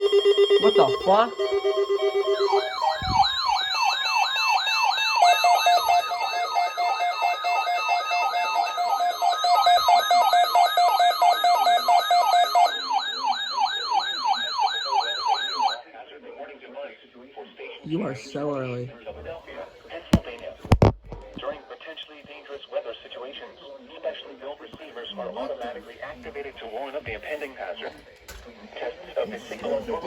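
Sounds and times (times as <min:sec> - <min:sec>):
steady beeping tones: 0:00.0 - 0:15.8
wailing weather alarm: 0:00.0 - 0:15.8.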